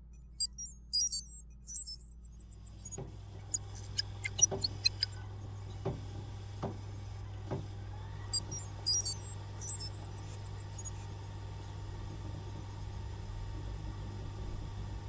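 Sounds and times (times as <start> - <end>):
steady low hum: 0.0 - 5.3, 8.2 - 11.0
electronic chirps and bleeps: 0.3 - 3.0, 3.6 - 5.2, 8.3 - 11.0.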